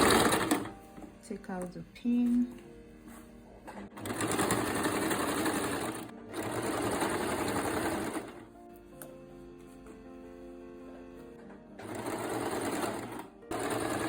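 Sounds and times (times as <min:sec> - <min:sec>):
sewing machine stitching: 0:00.0 - 0:00.8, 0:03.7 - 0:08.4, 0:11.8 - 0:14.0.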